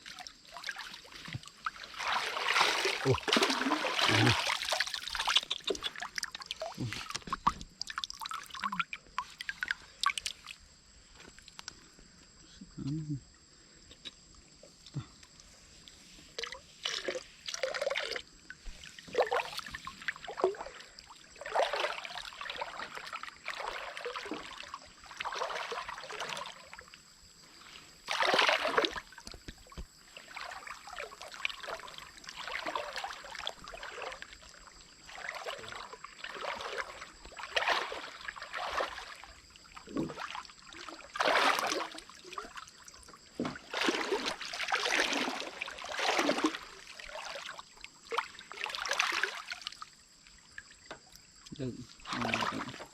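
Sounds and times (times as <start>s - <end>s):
water splashing and sloshing: 0.0s - 11.8s, 14.6s - 52.9s.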